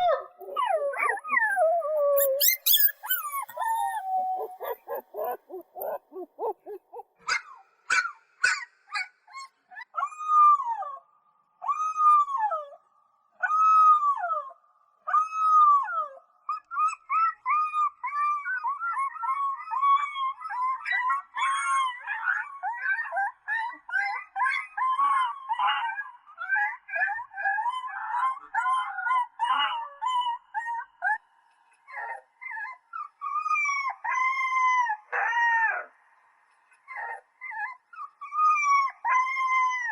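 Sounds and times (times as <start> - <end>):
puppies howling and yipping: 0.0 - 7.5.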